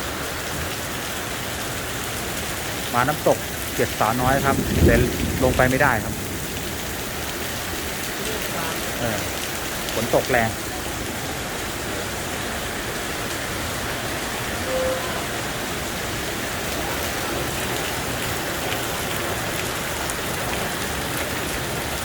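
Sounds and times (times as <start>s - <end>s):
heavy rain pouring: 0.0s - 22.0s
short tone: 14.6s - 15.4s.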